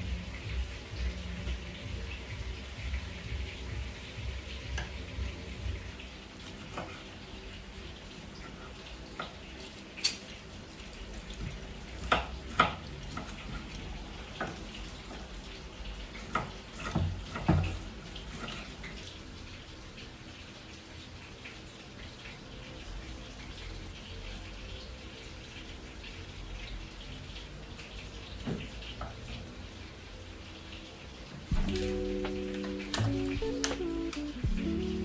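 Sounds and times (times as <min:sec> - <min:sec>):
low steady hum: 0:00.0 - 0:06.0, 0:31.5 - 0:35.0.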